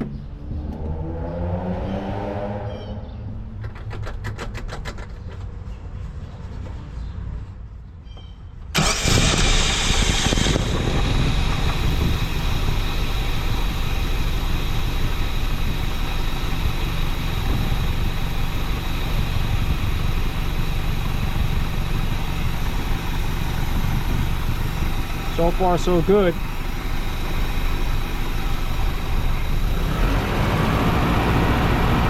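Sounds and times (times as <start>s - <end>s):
car engine starting and idling: 8.7s - 32.0s.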